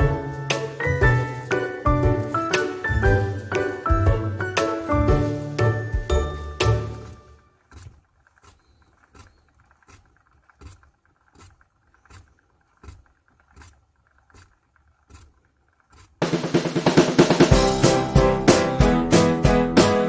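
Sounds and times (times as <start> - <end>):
slippers dragging on floor: 0.0 - 10.0
loud music: 16.2 - 20.0.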